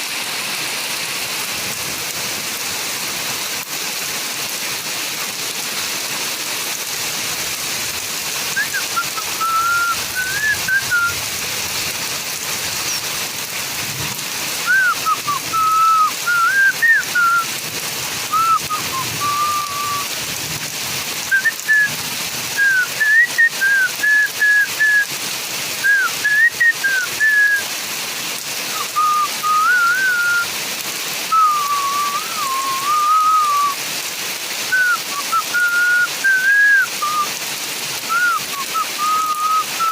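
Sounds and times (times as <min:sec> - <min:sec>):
steady rain falling: 0:00.0 - 0:39.9
person whistling a tune: 0:08.6 - 0:11.2, 0:14.6 - 0:17.5, 0:18.3 - 0:20.1, 0:21.3 - 0:22.0, 0:22.6 - 0:25.1, 0:25.8 - 0:27.7, 0:28.7 - 0:30.5, 0:31.3 - 0:33.8, 0:34.7 - 0:37.3, 0:38.1 - 0:39.9.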